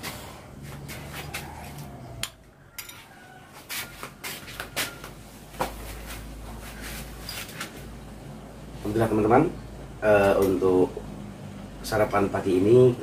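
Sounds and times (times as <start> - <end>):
utensils clinking against dishes: 2.7 - 3.1, 10.2 - 10.6.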